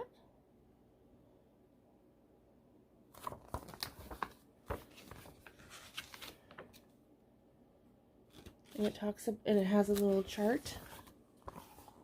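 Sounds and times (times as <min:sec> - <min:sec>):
paper pages rustling: 0:03.1 - 0:06.9, 0:08.3 - 0:12.0.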